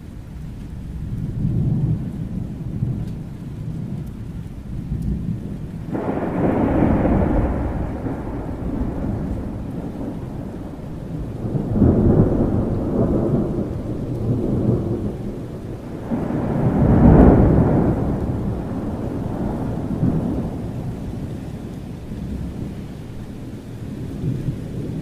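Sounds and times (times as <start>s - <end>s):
steady rain: 0.0s - 25.0s
rolling thunder: 0.5s - 25.0s.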